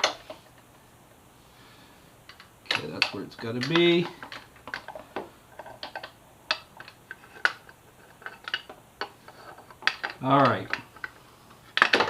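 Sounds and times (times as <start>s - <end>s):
metal parts clicking and clinking: 2.3s - 11.2s, 11.8s - 12.0s.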